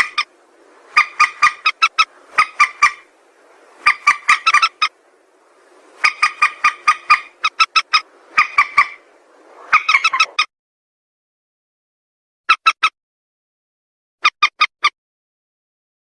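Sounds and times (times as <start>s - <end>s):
rail calling in rapid notes: 0.0s - 5.0s, 5.8s - 10.5s.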